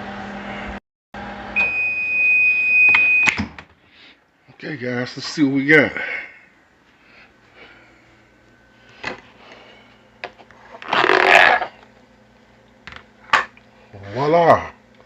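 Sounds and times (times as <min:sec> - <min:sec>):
low steady hum: 0:03.8 - 0:15.0.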